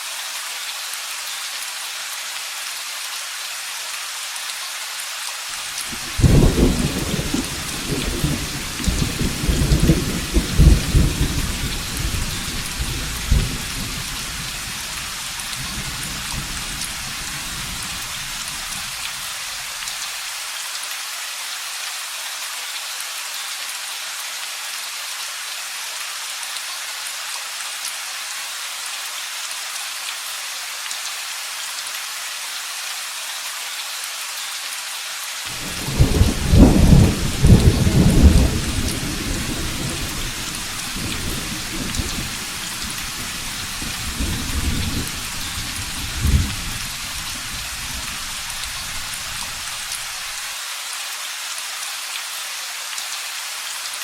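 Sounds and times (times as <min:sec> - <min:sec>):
heavy rain: 0:00.0 - 0:54.0
thunder rumbling: 0:06.0 - 0:14.1, 0:35.6 - 0:49.9.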